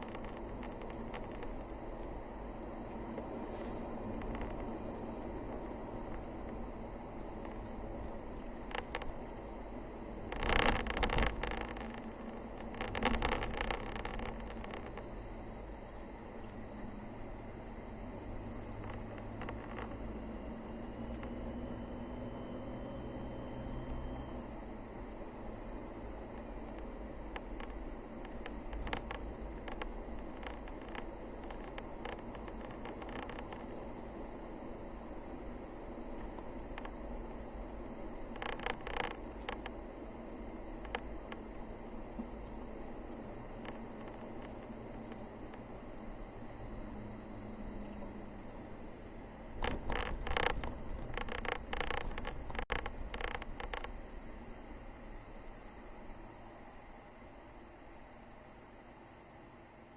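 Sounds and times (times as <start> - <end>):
crackling rattle: 0.0 - 2.1, 3.2 - 6.7, 7.4 - 9.5, 10.2 - 15.3, 18.6 - 20.2, 26.3 - 34.0, 35.5 - 37.5, 38.2 - 39.9, 40.7 - 41.5, 42.1 - 46.4, 49.5 - 54.1
road rumble and hiss: 0.0 - 59.9
sharp clicks and ticks: 49.6 - 53.9.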